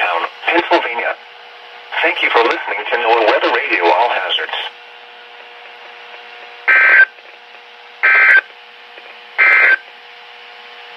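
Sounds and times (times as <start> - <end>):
radio hiss: 0.0 - 1.2, 1.9 - 4.8, 6.6 - 7.2, 8.0 - 8.5, 9.4 - 9.8
digital data tone bursts: 6.7 - 7.1, 8.0 - 8.5, 9.4 - 9.8.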